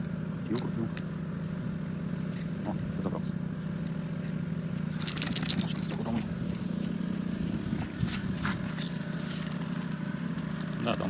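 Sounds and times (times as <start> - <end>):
low hum inside truck cab: 0.0 - 11.0
rustles: 3.8 - 10.9.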